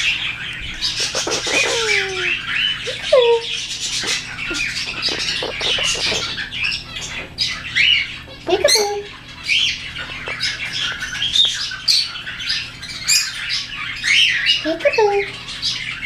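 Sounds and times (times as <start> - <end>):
caged birds chirping and squawking: 0.0 - 16.0.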